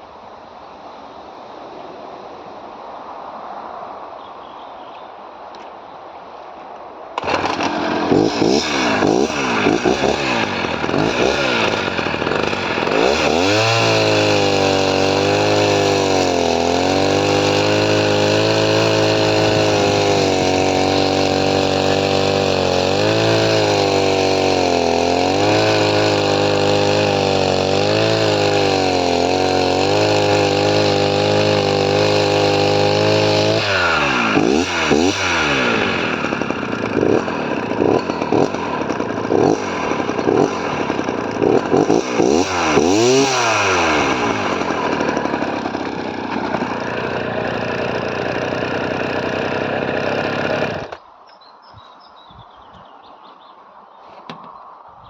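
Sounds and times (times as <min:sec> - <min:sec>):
chainsaw revving: 0:07.2 - 0:51.0.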